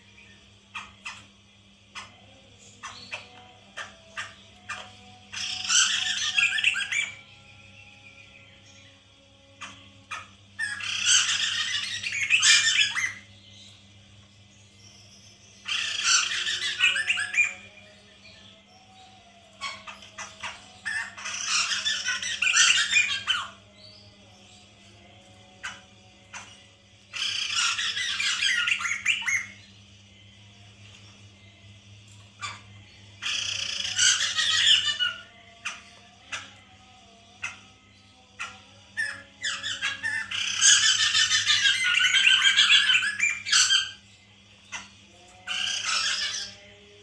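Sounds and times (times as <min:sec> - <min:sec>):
bird harsh chattering calls: 0:15.6 - 0:17.6, 0:25.6 - 0:29.6, 0:32.4 - 0:36.5, 0:38.4 - 0:44.0, 0:44.7 - 0:46.6.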